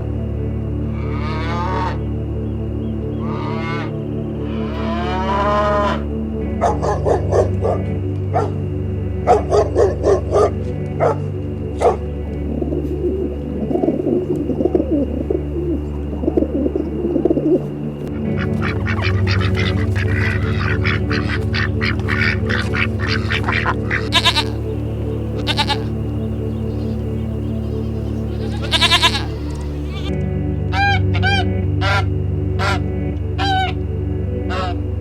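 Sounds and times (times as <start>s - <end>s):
background music: 0.0s - 35.0s
bird calls: 15.7s - 30.1s.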